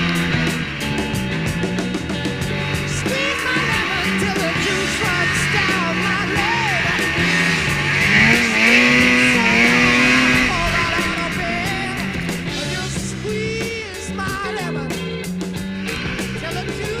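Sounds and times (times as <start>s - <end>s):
rock music with guitar: 0.0s - 17.0s.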